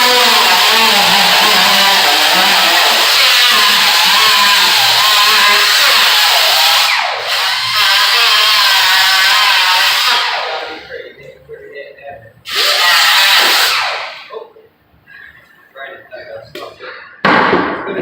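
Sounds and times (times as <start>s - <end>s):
power grinder whining on sheet metal: 0.0s - 11.0s, 12.5s - 14.3s.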